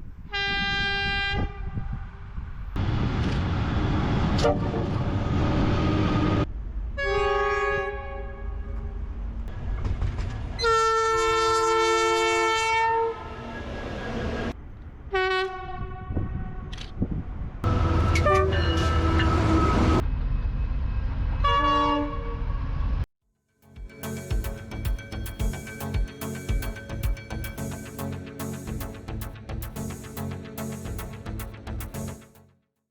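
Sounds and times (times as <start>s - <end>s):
train rumbling on rails: 0.1s - 23.1s
train horn blasts: 0.3s - 2.4s, 7.0s - 9.0s, 10.6s - 13.4s, 15.1s - 16.8s, 17.7s - 20.0s, 21.4s - 22.5s.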